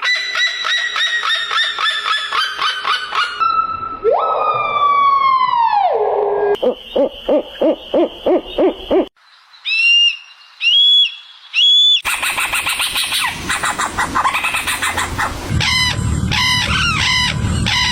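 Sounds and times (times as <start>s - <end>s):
rapid chattering calls: 12.0s - 17.9s.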